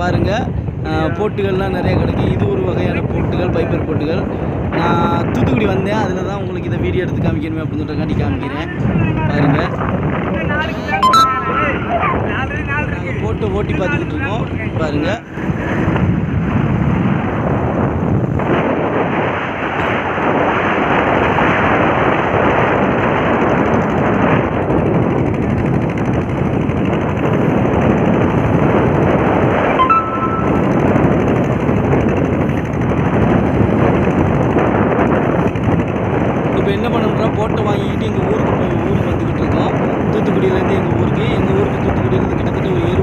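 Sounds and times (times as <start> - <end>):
wind noise on microphone: 0.0 - 43.0
boat engine pulsing: 23.8 - 34.5.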